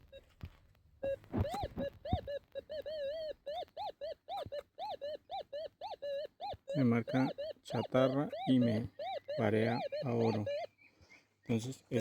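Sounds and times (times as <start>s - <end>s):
metal detector beeps: 1.0s - 5.1s, 6.1s - 10.7s.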